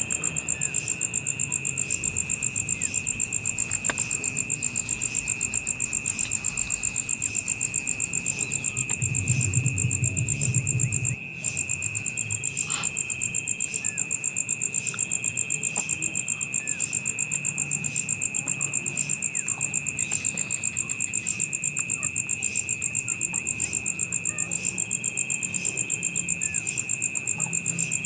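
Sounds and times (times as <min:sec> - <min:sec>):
insects trilling and buzzing: 0:00.0 - 0:28.0
low rumble: 0:08.4 - 0:12.4.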